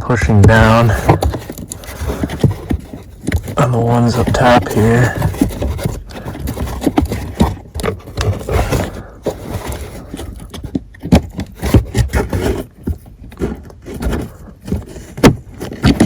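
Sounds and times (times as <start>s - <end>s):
plastic cover scraping and clicking: 0.0s - 16.0s.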